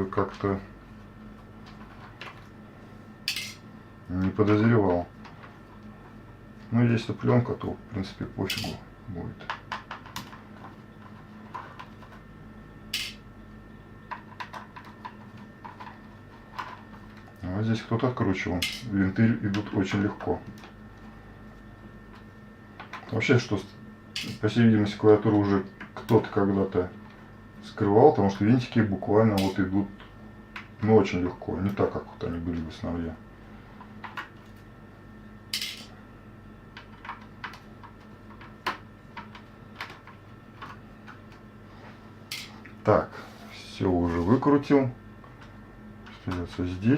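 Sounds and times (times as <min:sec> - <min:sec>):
faint steady hum: 0:00.0 - 0:46.9.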